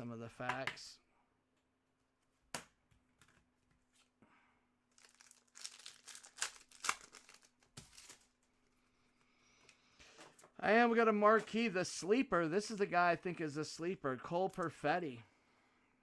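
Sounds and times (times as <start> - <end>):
foil wrapper crinkling and tearing: 4.9 - 8.6.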